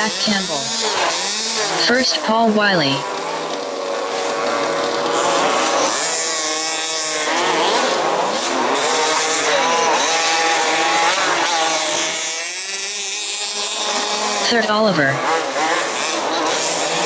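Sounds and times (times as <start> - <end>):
small two-stroke engines revving: 0.0 - 17.0.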